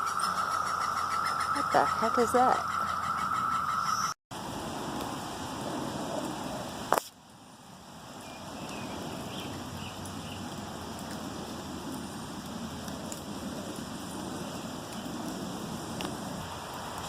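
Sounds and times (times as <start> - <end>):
steady rain falling: 4.4 - 17.0.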